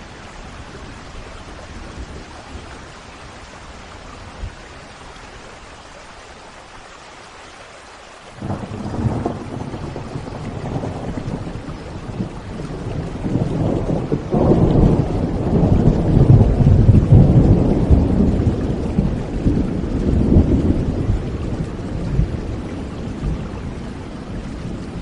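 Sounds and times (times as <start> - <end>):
steady rain: 0.0 - 25.0
thunder rumbling: 8.4 - 25.0.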